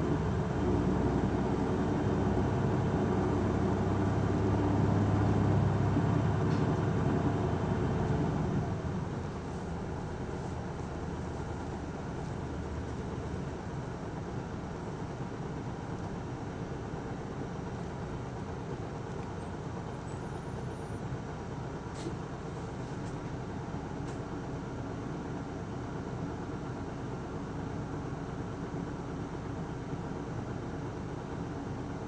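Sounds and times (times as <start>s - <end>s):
road noise: 0.0s - 24.2s
bus diesel engine hum: 0.0s - 32.0s.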